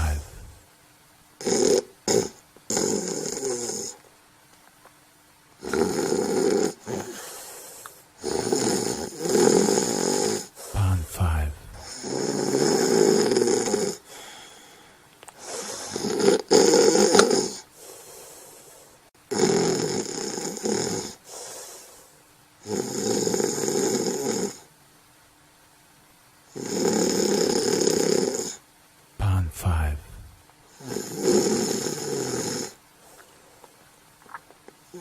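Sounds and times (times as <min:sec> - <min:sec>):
person snoring: 0:00.0 - 0:00.6, 0:01.4 - 0:04.0, 0:05.6 - 0:07.6, 0:08.2 - 0:14.8, 0:15.4 - 0:18.1, 0:19.3 - 0:21.8, 0:22.6 - 0:24.6, 0:26.5 - 0:28.6, 0:29.2 - 0:32.8.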